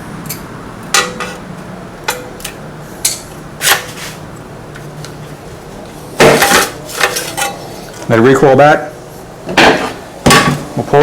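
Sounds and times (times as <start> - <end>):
short scrape: 3.6 - 4.2.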